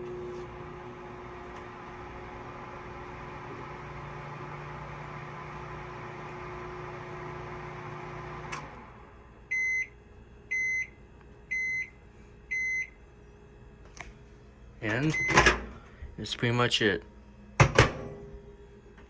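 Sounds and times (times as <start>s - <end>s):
microwave oven humming: 0.0s - 19.0s.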